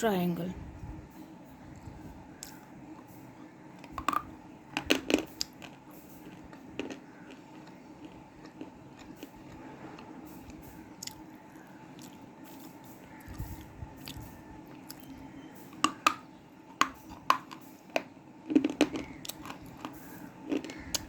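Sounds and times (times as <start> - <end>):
chewing crunches and clicks: 1.7 - 2.7, 3.8 - 21.0.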